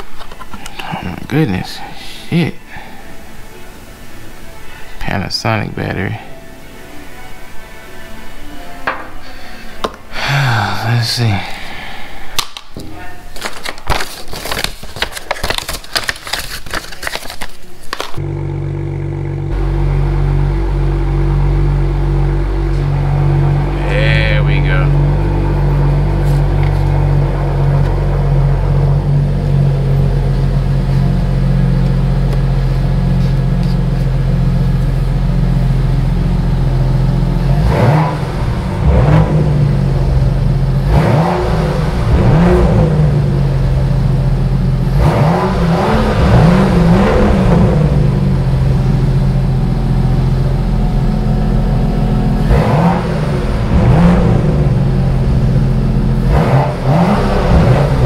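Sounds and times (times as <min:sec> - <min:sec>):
car engine idling: 0:18.2 - 0:58.0
engine revving in throttle blips: 0:18.2 - 0:58.0.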